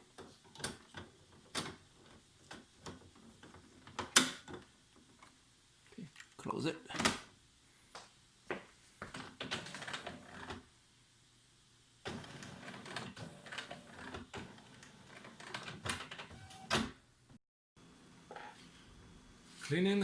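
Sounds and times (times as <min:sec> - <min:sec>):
printer mechanism whirring and clicking: 0:09.1 - 0:10.6, 0:12.0 - 0:16.9.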